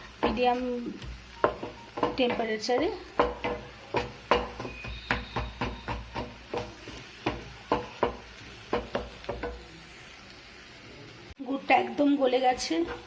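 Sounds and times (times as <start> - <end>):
spoon scraping a pan: 12.5 - 13.0.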